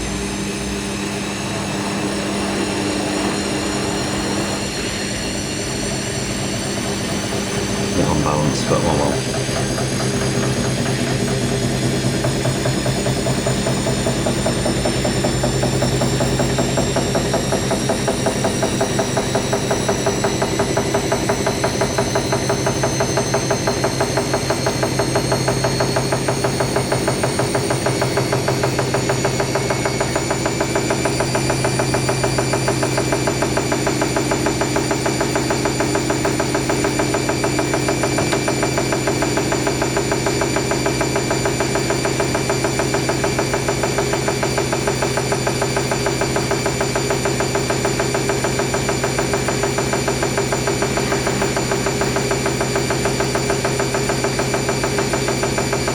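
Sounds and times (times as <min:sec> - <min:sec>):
washing machine motor whining: 0:00.0 - 0:55.9
drum beating rapidly: 0:08.0 - 0:10.3.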